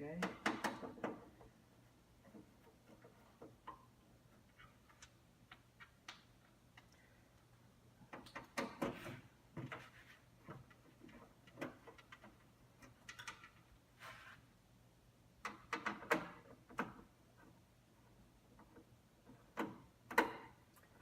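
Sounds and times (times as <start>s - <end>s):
metal parts and screws clicking: 10.7s - 13.7s.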